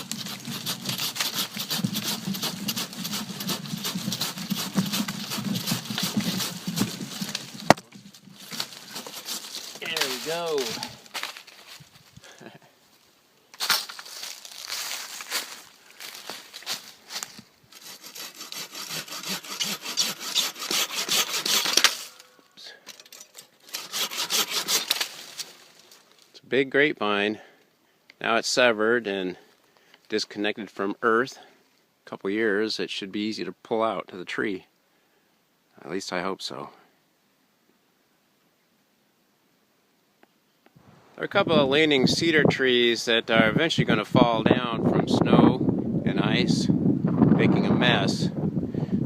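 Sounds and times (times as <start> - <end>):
saw cutting through woody stem: 0.0 - 11.2, 17.1 - 22.3, 23.6 - 25.9.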